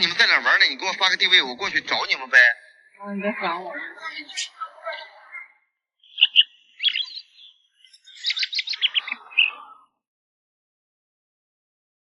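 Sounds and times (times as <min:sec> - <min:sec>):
bird chirping and trilling: 0:04.0 - 0:09.9.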